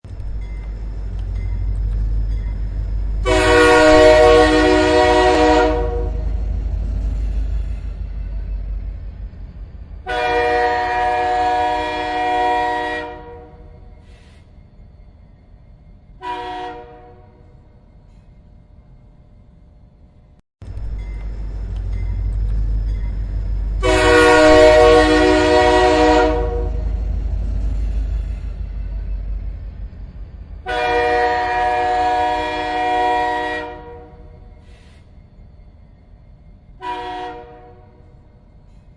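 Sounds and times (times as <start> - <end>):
low rumble of train: 0.0 - 38.9
train horn blast: 3.2 - 6.5, 10.0 - 13.8, 16.2 - 17.6, 23.8 - 27.0, 30.6 - 34.4, 36.8 - 38.2.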